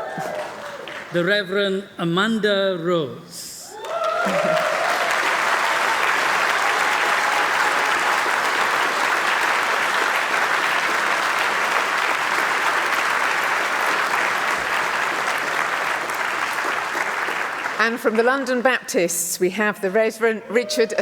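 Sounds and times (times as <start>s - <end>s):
crowd applauding: 0.0s - 1.2s, 3.7s - 18.2s.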